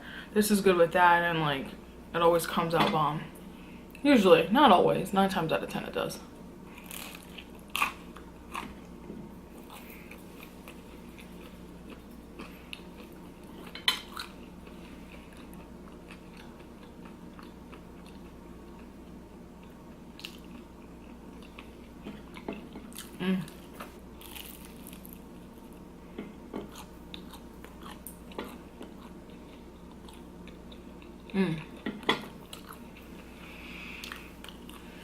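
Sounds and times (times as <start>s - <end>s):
person chewing and biting: 6.7s - 8.9s, 9.6s - 18.9s, 19.6s - 25.8s, 26.6s - 31.3s, 34.0s - 35.0s.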